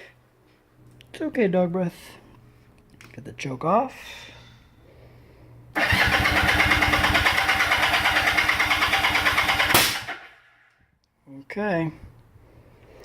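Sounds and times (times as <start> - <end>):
motorcycle engine running: 5.8 - 9.9
engine cutting off with crack: 5.8 - 10.3.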